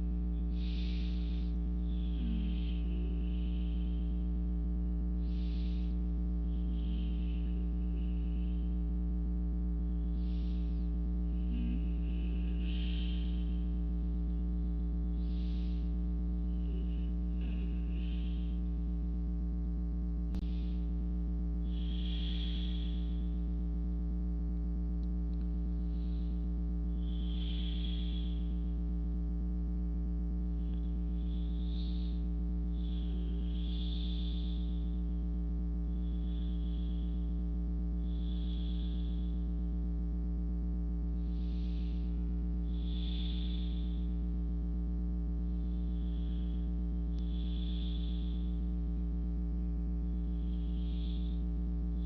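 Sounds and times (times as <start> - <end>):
steady electrical hum: 0.0 - 52.0
slow breathing: 0.5 - 4.0, 5.2 - 8.6, 10.1 - 13.8, 15.2 - 18.7
click: 24.6 - 25.5.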